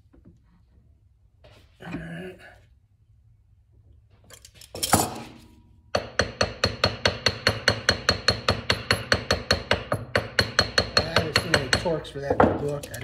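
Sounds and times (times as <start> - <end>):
hand tool clacking on metal: 12.6 - 13.0.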